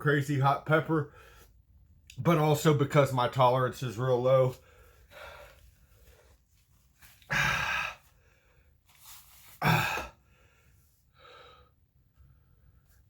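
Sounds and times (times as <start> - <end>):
man breathing hard: 1.1 - 1.6, 4.6 - 6.4, 7.1 - 12.9.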